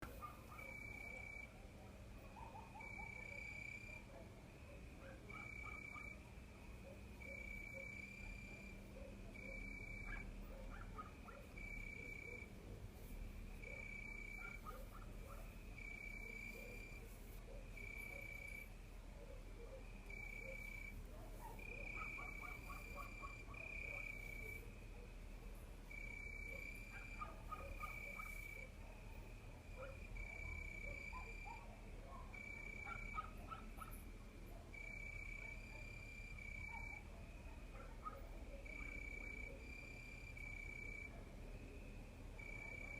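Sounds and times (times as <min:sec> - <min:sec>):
faint short insect calls: 0:00.1 - 0:01.6, 0:02.3 - 0:34.1, 0:34.7 - 0:42.9
crickets trilling: 0:04.8 - 0:19.0.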